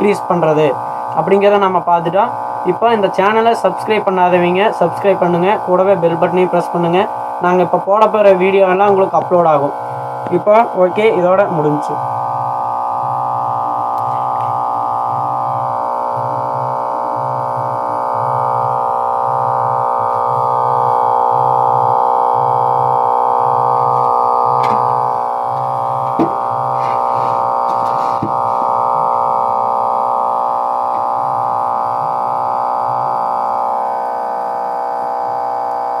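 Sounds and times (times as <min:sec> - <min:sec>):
synthesizer music over loudspeakers: 0:00.0 - 0:36.0.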